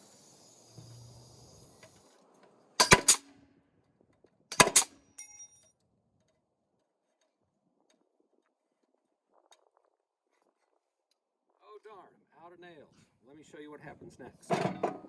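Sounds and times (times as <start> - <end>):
hammer driving nails: 2.8 - 3.3, 4.5 - 5.4
hammer tap with metallic ring: 5.2 - 5.7.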